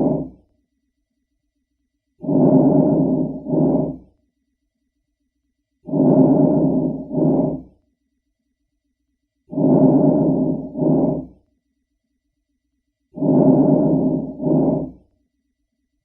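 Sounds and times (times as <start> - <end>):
breath sounds through stethoscope: 0.0 - 0.4, 2.2 - 4.1, 5.9 - 7.8, 9.5 - 11.4, 13.2 - 15.0.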